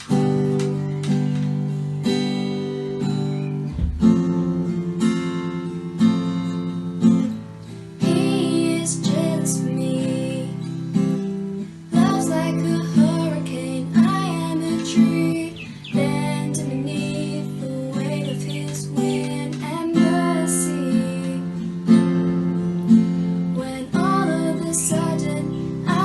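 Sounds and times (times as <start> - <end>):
acoustic guitar strumming: 0.0 - 26.0
woman singing: 8.0 - 22.4, 23.4 - 26.0.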